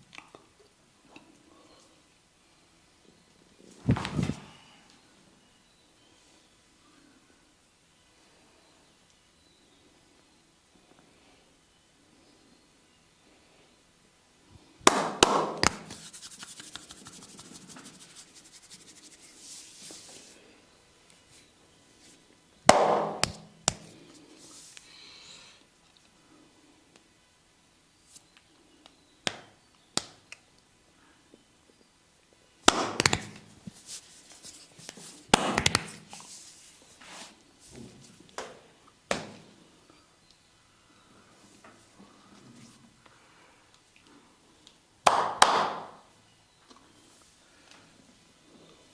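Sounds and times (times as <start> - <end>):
sharp massage strikes: 14.9 - 18.9, 22.7 - 23.8, 32.7 - 33.4.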